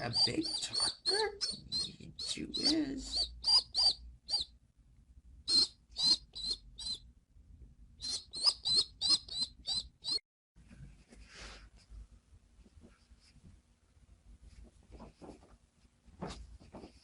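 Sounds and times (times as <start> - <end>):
baby pigeon peeping: 0.0 - 4.5, 5.4 - 7.0, 8.0 - 10.2.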